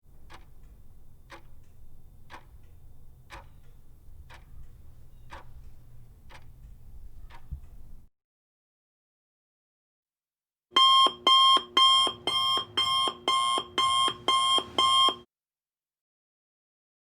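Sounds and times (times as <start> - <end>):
clock ticking: 0.0 - 8.1, 10.8 - 15.2
low steady hum: 0.1 - 8.1.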